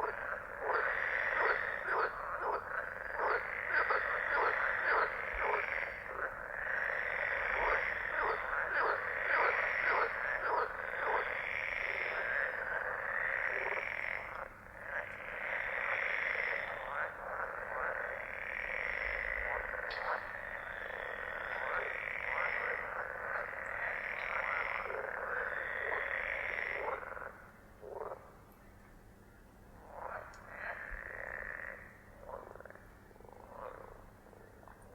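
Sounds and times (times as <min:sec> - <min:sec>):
frogs croaking: 0:00.0 - 0:34.9.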